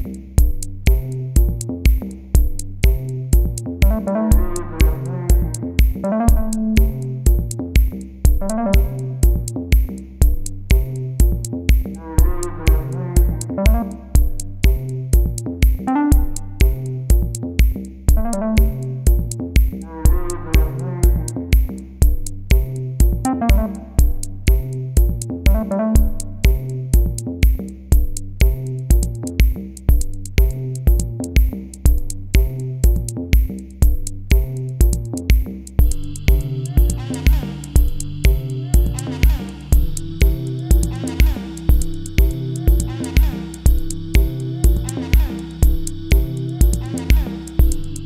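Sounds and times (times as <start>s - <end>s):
drum machine beat: 0.0s - 48.0s
synthesizer melody: 3.8s - 7.2s, 8.4s - 9.4s, 12.1s - 14.2s, 15.9s - 16.6s, 18.2s - 19.0s, 23.3s - 24.2s, 25.5s - 26.5s, 35.8s - 48.0s.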